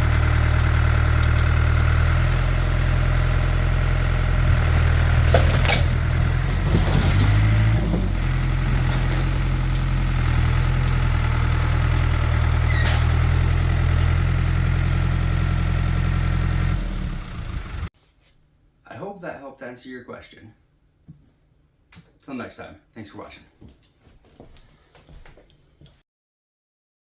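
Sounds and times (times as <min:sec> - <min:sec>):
tractor engine idling: 0:00.0 - 0:17.9
high-pitched squeaks: 0:12.6 - 0:13.2.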